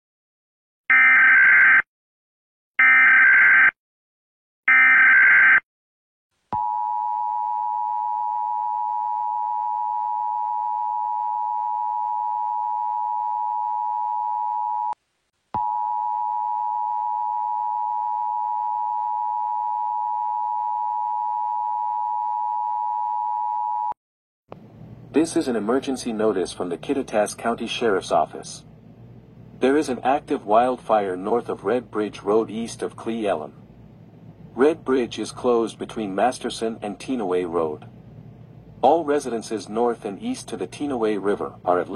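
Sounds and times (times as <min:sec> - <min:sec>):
two-tone attention signal: 0:04.7 - 0:05.6.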